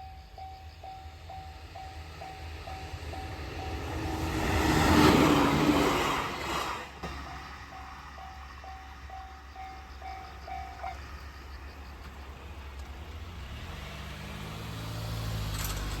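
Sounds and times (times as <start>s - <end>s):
level crossing warning bell: 0.0s - 4.6s, 7.2s - 11.4s
vehicle engine approaching: 0.2s - 16.0s.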